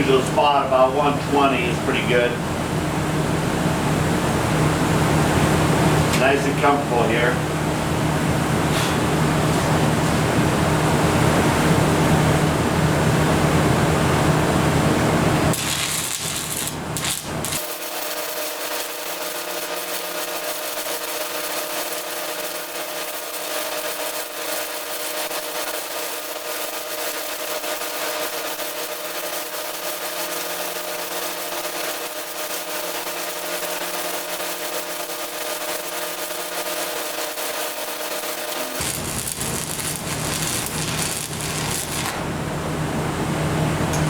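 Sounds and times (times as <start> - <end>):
low steady hum: 15.4 - 17.6
welding arc crackling and hissing: 15.5 - 42.3.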